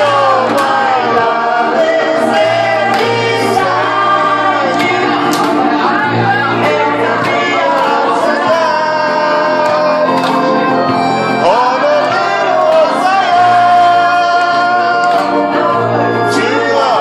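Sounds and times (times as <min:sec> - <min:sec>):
instrumental backing: 0:00.0 - 0:17.0
person singing: 0:00.0 - 0:17.0.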